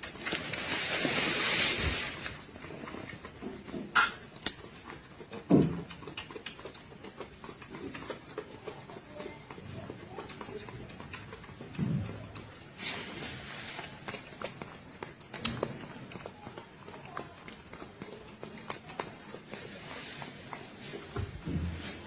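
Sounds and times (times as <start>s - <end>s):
rustling and handling noises: 0.0s - 4.6s, 12.6s - 16.2s, 18.6s - 22.0s.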